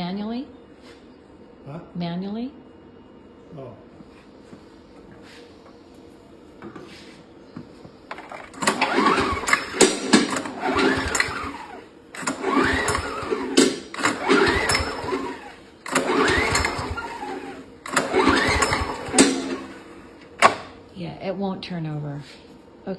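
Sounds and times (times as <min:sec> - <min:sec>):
small engine cranking: 0:08.4 - 0:19.8.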